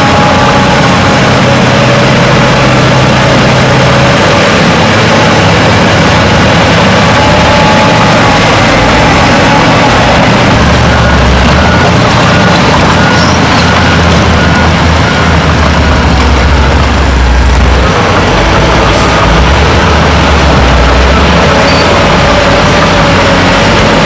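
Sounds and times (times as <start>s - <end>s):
diesel machinery engine drone: 0.0s - 24.0s.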